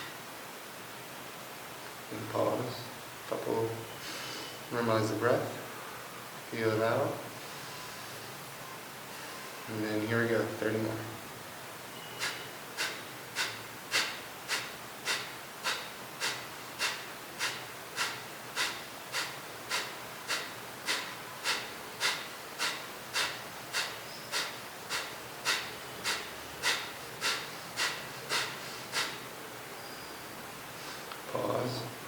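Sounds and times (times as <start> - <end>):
forceful nasal exhales: 4.0 - 4.6, 12.0 - 31.1.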